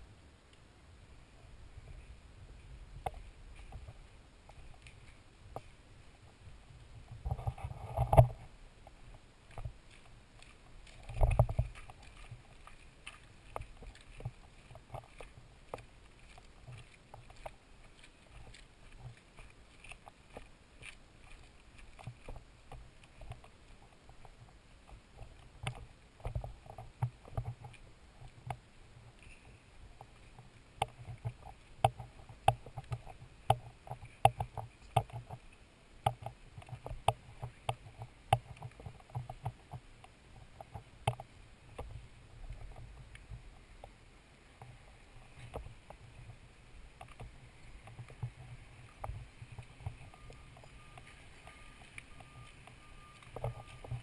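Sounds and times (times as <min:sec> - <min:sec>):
irregular knocks and clicks: 0:07.2 - 0:28.6, 0:30.8 - 0:43.9.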